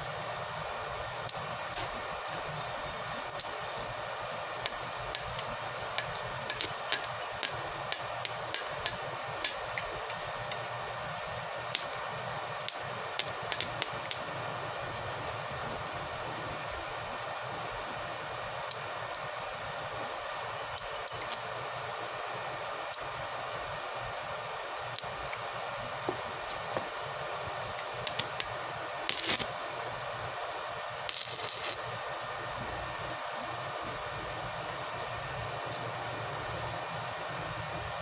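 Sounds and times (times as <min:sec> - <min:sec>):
arc welding crackling hiss: 0:03.0 - 0:14.3, 0:20.6 - 0:21.6, 0:22.7 - 0:32.1.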